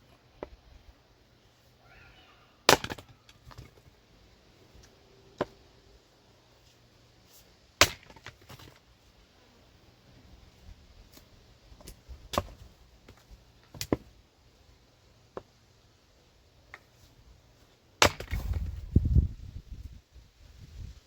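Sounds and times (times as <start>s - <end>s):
axe chopping firewood: 2.6s - 3.9s, 5.4s - 5.6s, 7.8s - 8.8s, 11.8s - 14.1s, 18.0s - 18.8s.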